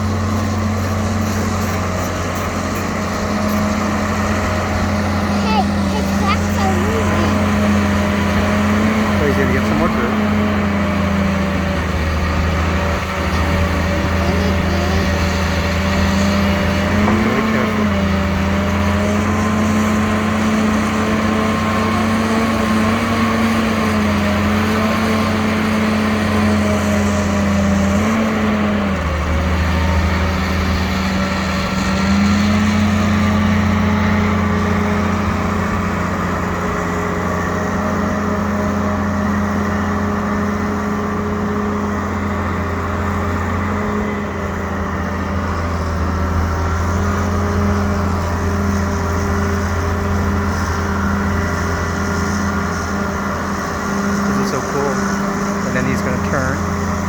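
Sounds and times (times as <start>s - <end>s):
excavator diesel engine: 0.0s - 57.0s.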